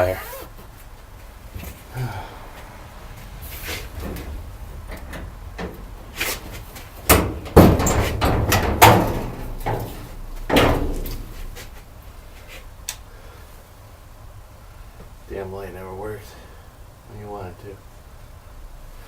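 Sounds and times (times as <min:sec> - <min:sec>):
rattling rumble: 0:01.5 - 0:12.4
knocks and bangs: 0:07.0 - 0:11.8.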